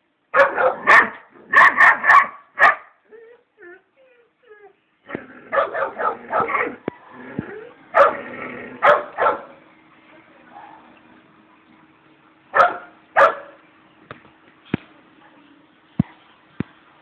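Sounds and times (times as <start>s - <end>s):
dog barking: 0.4s - 3.0s, 5.5s - 6.8s, 8.0s - 8.2s, 8.8s - 9.5s, 12.6s - 13.6s.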